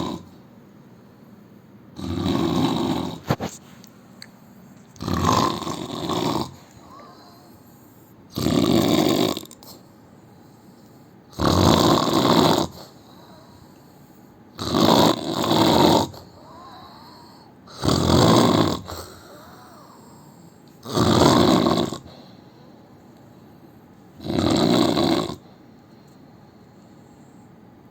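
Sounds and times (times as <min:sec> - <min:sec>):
man snoring: 0:00.0 - 0:00.3, 0:02.0 - 0:03.5, 0:05.0 - 0:07.5, 0:08.3 - 0:09.6, 0:11.3 - 0:13.6, 0:14.6 - 0:22.1, 0:24.2 - 0:25.4.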